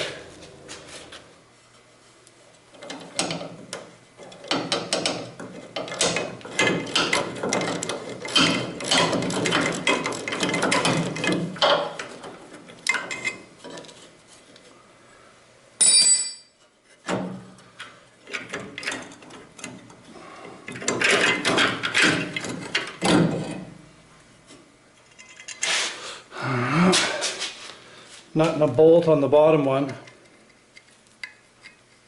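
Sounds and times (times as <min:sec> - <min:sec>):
bright ringing metal clink: 0:15.8 - 0:16.6.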